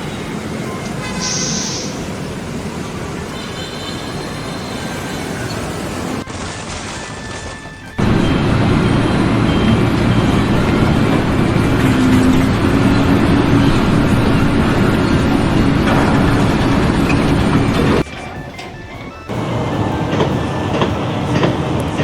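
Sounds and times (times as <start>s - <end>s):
heavy engine rumbling: 0.0s - 22.0s.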